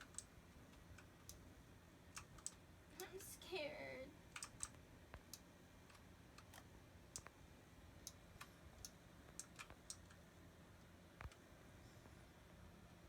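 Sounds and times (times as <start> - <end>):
keyboard and mouse clicks: 0.0 - 1.4, 2.1 - 2.6, 4.3 - 7.4, 8.0 - 10.2
low steady hum: 0.0 - 13.0.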